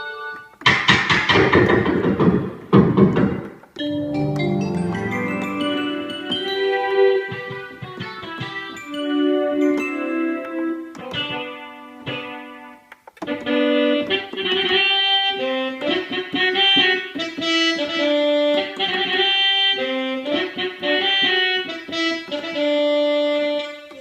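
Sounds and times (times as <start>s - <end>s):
synthesizer keyboard melody: 3.8s - 10.8s.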